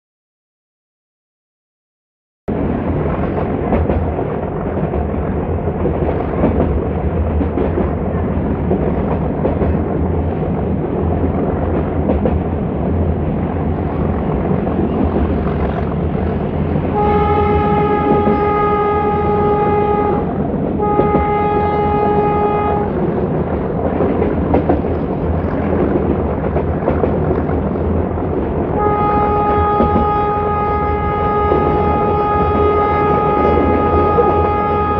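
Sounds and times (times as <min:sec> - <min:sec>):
train rumbling: 0:02.5 - 0:34.9
locomotive horn blasts: 0:16.9 - 0:23.0, 0:28.7 - 0:34.9.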